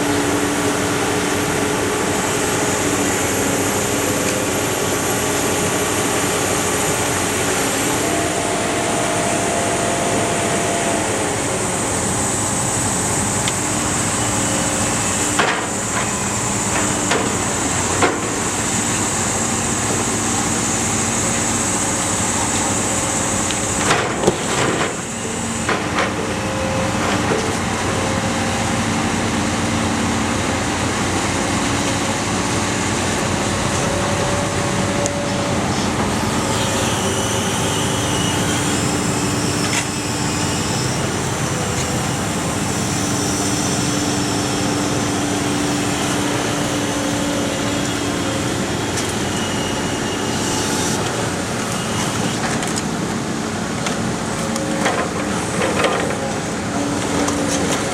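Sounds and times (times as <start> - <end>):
car baler machine droning: 0.0 - 57.9.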